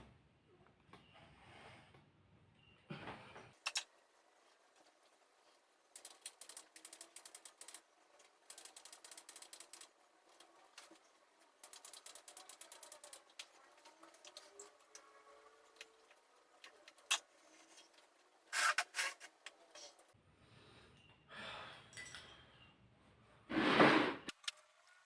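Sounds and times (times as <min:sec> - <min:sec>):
rapid ratchet-like clicking: 0:05.9 - 0:15.0.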